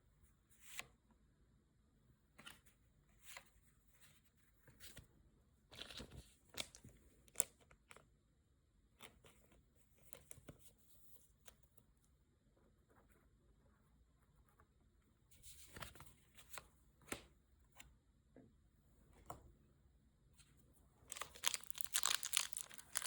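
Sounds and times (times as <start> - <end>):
cards and packaging rustling: 21.1 - 23.0.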